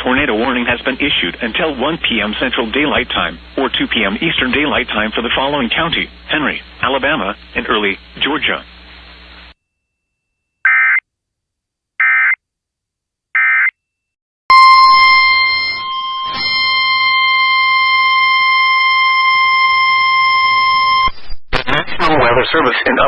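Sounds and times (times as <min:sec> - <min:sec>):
steady single-pitched alarm tone: 0:14.5 - 0:21.1.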